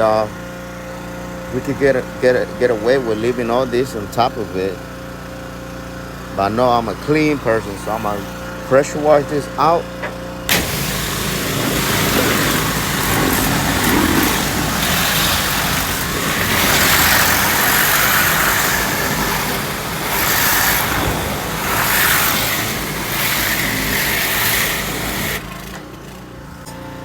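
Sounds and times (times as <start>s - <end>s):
low engine hum: 0.0s - 27.0s
pressure washer spraying hiss: 10.0s - 25.5s.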